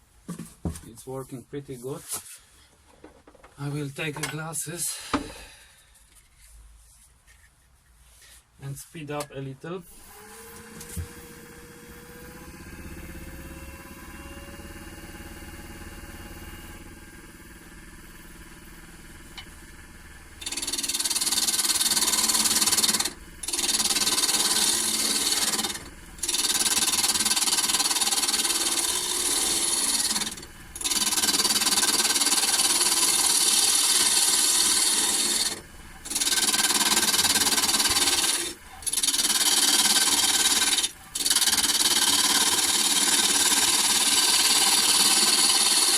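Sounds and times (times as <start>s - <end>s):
wood lathe motor running: 9.9s - 45.9s
tool scraping spinning wood: 20.4s - 45.9s.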